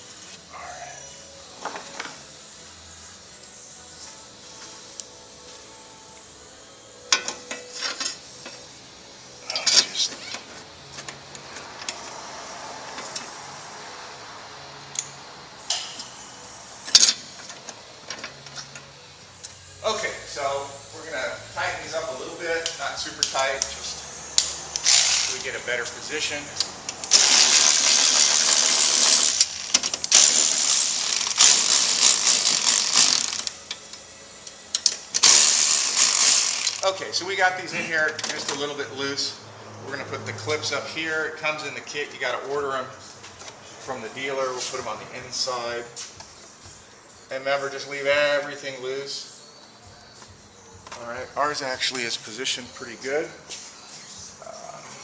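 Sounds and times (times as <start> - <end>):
air ratchet running: 24.4 - 25.6, 26.6 - 33.8, 34.7 - 37.0.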